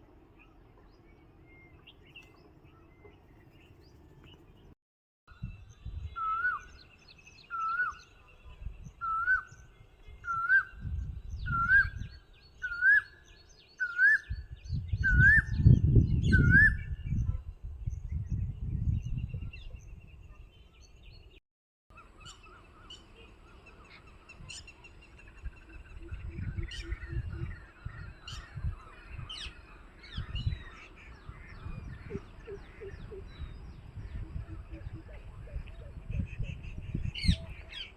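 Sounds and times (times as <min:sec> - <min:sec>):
birds chirping: 0:00.0 - 0:04.8, 0:05.4 - 0:37.9
bird upslurred call: 0:26.1 - 0:37.9.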